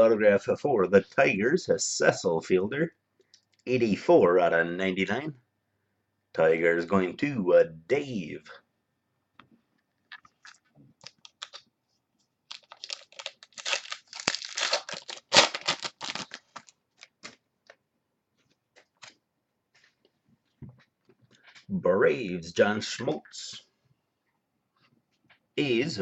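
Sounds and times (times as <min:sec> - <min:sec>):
plastic packaging crinkling: 0:10.1 - 0:11.7, 0:12.4 - 0:17.8.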